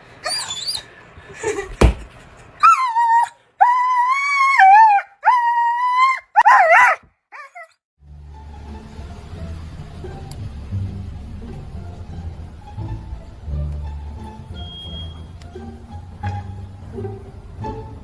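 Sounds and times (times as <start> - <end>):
dog howling: 2.6 - 7.7.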